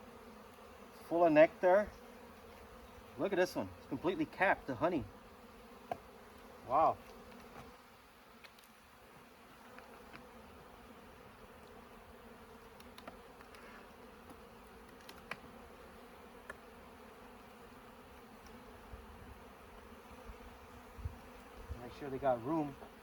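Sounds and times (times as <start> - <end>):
honeybees humming: 0.0 - 23.0.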